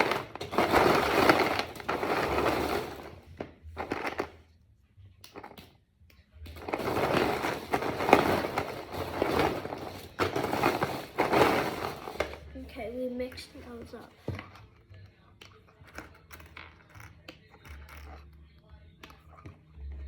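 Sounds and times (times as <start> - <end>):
plastic pieces clattering by hand: 0.0 - 4.4, 6.5 - 12.6.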